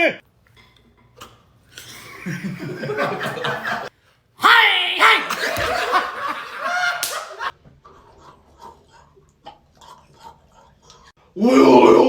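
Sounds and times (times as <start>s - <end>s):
person making vocal noises: 4.4s - 5.9s.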